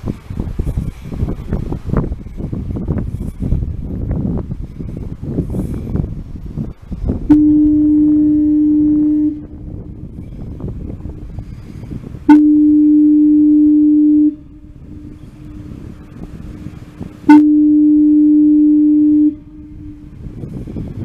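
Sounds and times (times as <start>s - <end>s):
foghorn blasts: 7.0s - 21.0s.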